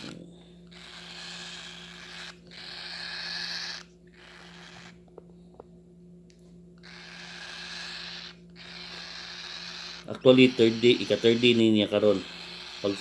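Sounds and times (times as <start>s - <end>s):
bird chick begging calls: 0.7s - 5.0s, 6.8s - 13.0s.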